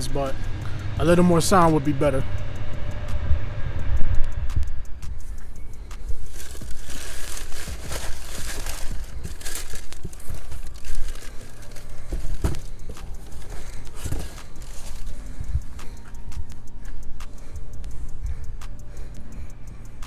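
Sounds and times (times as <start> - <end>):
packaging crinkling and tearing: 6.2 - 15.2.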